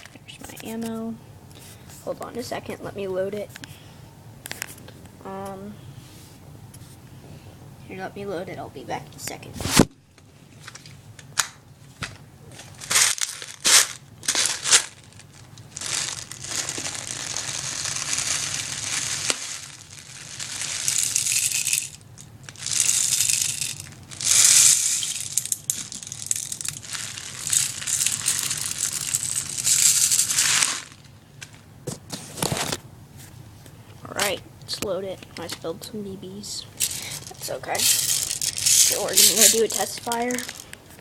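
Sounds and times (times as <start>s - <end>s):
plastic pellets rattling: 12.6s - 31.1s, 36.8s - 41.0s.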